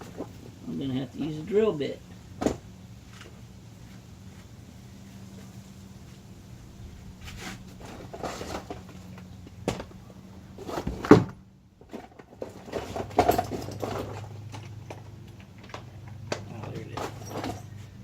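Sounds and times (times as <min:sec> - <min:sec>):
rustling: 0:02.4 - 0:18.0
objects being moved and set down: 0:07.2 - 0:18.0.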